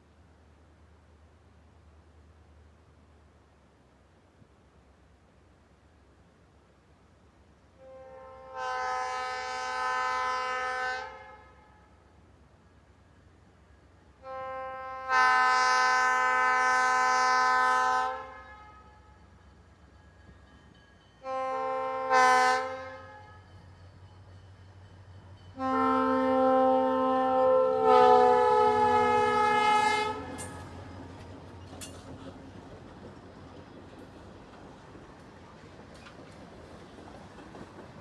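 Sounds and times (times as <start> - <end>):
locomotive air horn blasts: 7.8 - 12.1, 14.2 - 19.2, 21.2 - 23.6, 25.6 - 31.3
locomotive low rumble: 16.0 - 38.0.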